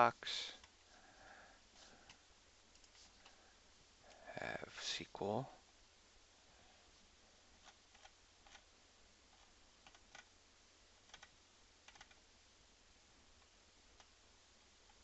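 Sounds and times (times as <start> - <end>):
computer keyboard clicks: 11.1 - 11.3, 11.9 - 12.2.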